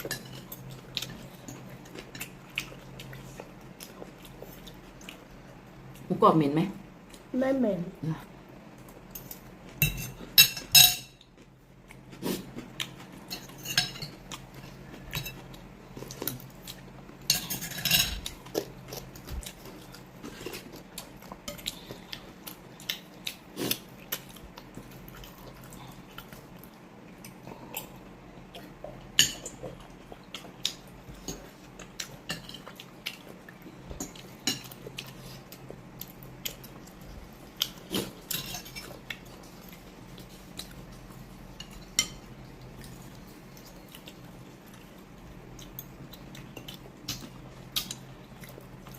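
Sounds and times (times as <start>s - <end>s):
cutlery clinking on plates: 9.2s - 11.2s, 13.3s - 14.2s, 17.3s - 18.3s.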